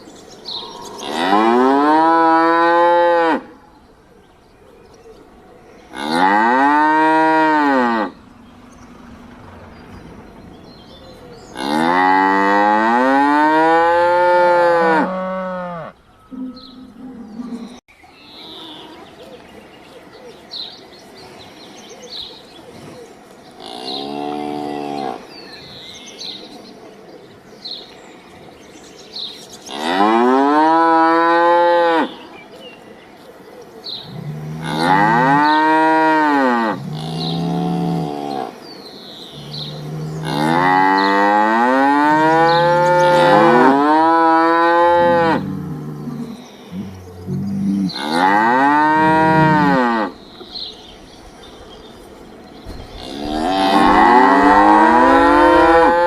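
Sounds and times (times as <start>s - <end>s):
cow mooing: 0.5s - 3.5s, 5.9s - 17.8s, 34.1s - 38.6s, 39.4s - 50.2s, 52.9s - 56.0s.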